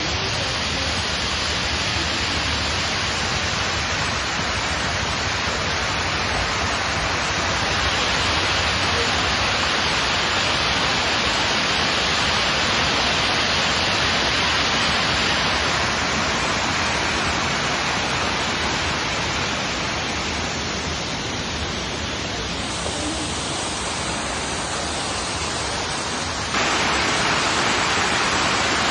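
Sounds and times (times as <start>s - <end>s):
waterfall pouring: 0.0s - 28.9s.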